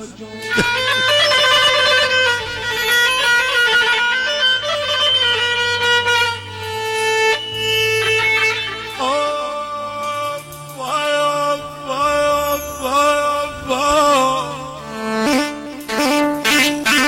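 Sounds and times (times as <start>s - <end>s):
steady low bass: 0.0s - 8.0s
violin-toned melody: 0.0s - 17.0s.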